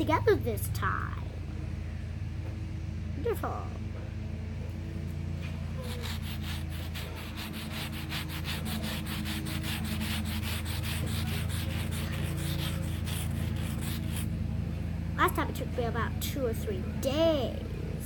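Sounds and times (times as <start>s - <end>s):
steady low hum: 0.0s - 18.0s
rhythmic scraping on plaster: 5.5s - 14.3s.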